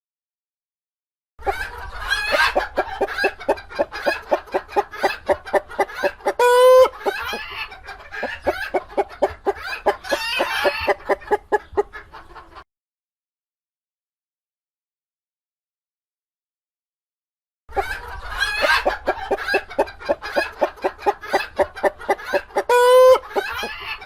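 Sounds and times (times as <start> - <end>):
chickens clucking: 1.4 - 12.6, 17.7 - 24.0
chicken loud held call: 6.1 - 7.4, 22.6 - 24.0.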